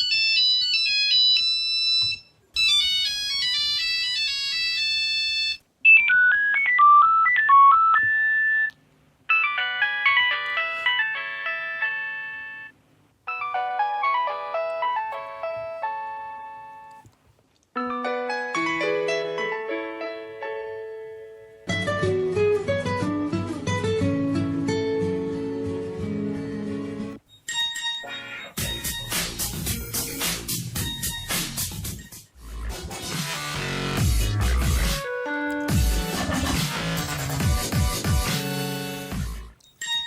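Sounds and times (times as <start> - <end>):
mobile phone ringtones: 0.0 - 8.7, 9.3 - 16.0, 27.3 - 29.2, 39.6 - 40.0.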